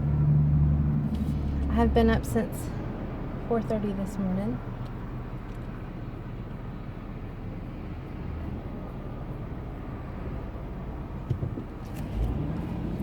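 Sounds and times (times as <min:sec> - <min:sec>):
car cabin road and engine noise: 0:00.0 - 0:13.0.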